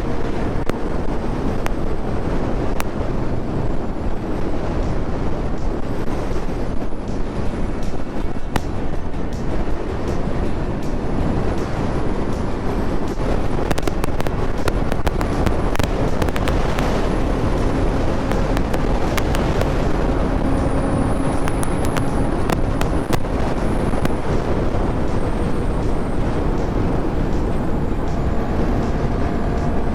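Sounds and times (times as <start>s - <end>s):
wind and road noise: 0.0s - 29.9s
sharp crackling clicks: 2.6s - 3.0s, 6.3s - 28.2s
motorcycle engine running: 2.8s - 29.7s.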